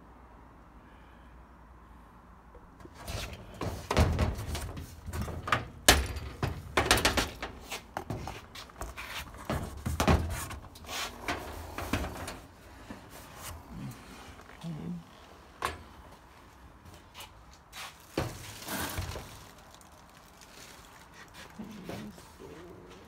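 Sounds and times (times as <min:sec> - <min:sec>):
items knocking and clattering: 0:02.8 - 0:12.5.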